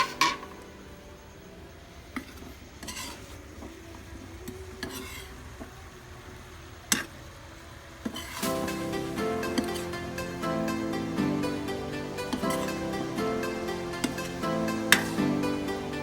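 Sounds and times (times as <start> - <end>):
utensil scraping a pot: 2.2 - 3.6, 4.7 - 5.5, 8.1 - 8.7, 9.3 - 10.3, 12.2 - 15.8.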